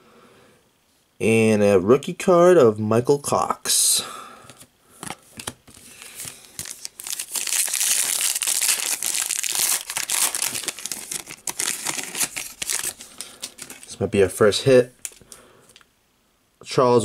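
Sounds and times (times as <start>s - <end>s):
wrapper tearing and crinkling: 5.0s - 14.0s, 15.0s - 15.3s.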